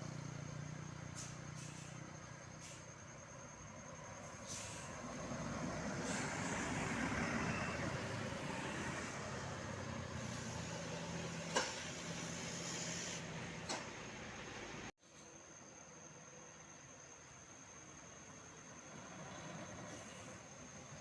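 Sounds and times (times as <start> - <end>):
motor vehicle passing: 5.1 - 13.6.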